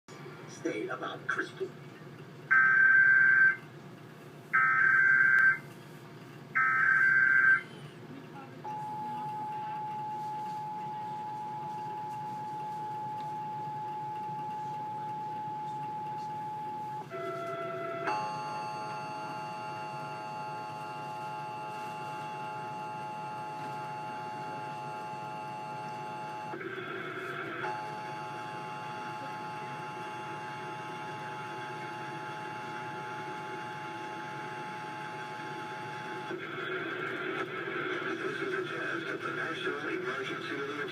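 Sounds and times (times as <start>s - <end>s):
harsh two-tone alarm: 2.5s - 3.6s, 4.5s - 5.6s, 6.6s - 7.7s, 8.7s - 26.6s, 27.6s - 36.4s.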